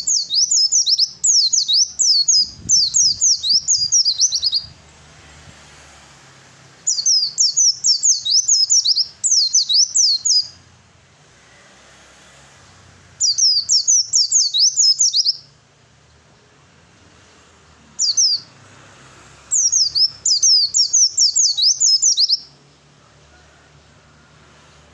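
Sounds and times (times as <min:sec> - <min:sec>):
bird chattering song: 0:00.0 - 0:04.8, 0:06.9 - 0:10.6, 0:13.2 - 0:15.5, 0:18.0 - 0:18.5, 0:19.5 - 0:22.6.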